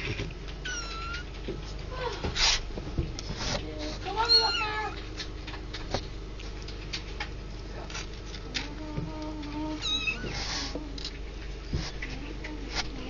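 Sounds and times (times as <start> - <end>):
kittens mewing: 0.0 - 2.6, 4.1 - 5.0, 9.7 - 11.0
small paws scratching and tapping: 0.0 - 13.0.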